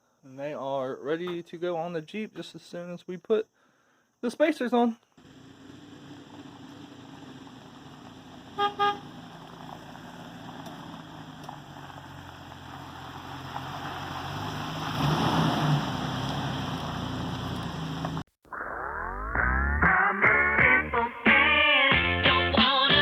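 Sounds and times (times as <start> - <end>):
vehicle engine and road noise: 5.2 - 18.4
car horn toots: 8.5 - 9.2.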